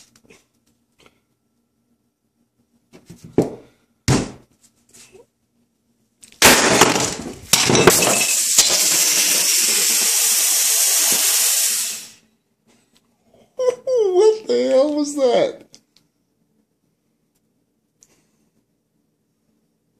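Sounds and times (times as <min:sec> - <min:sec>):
blows smashing a phone: 0:06.4 - 0:11.9
battery venting with a hiss: 0:08.3 - 0:12.2.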